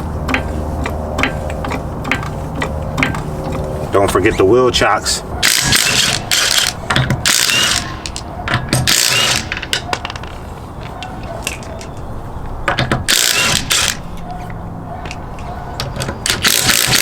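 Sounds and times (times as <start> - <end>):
cordless impact wrench bursts: 5.4 - 8.1, 8.8 - 9.6, 13.1 - 14.0, 16.2 - 17.0.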